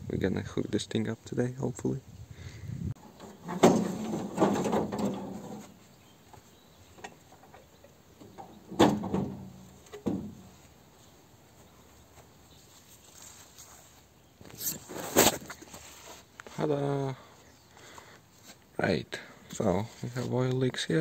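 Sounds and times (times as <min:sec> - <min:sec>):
hard objects knocking and clattering: 0:03.1 - 0:05.6.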